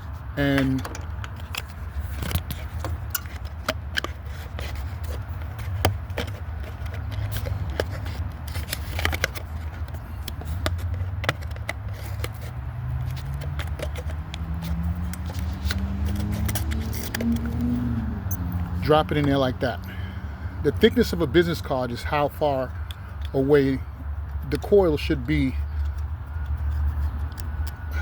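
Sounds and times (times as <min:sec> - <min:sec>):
metal parts clicking and scraping: 0:00.4 - 0:17.7.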